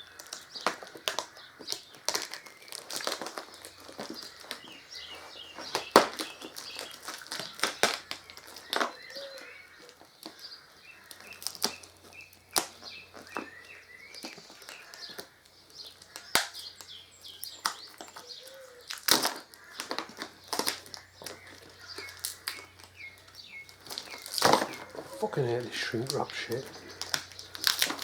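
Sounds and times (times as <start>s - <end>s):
plastic wrap crackling and rustling: 0.0s - 28.0s.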